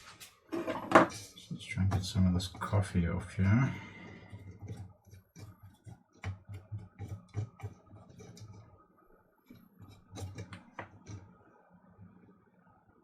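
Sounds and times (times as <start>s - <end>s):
tool scraping circuit board: 4.3s - 8.7s, 9.5s - 11.2s.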